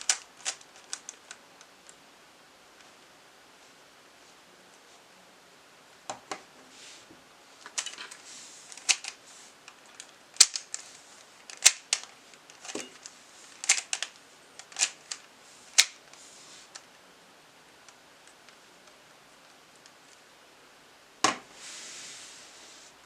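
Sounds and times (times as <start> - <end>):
plastic puzzle clicks: 0.0 - 2.0, 7.7 - 16.0
soft rustling: 6.6 - 17.0, 21.4 - 23.0.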